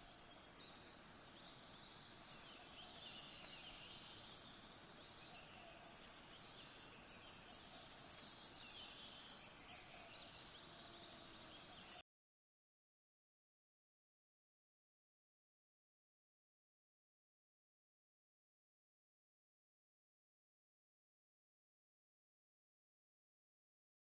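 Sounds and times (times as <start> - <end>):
distant birds chirping: 0.0 - 12.0.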